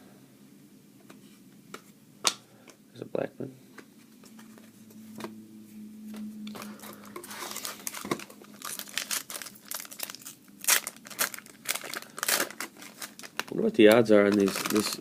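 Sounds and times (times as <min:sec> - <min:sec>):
foil wrapper tearing and crinkling: 0:06.6 - 0:15.0.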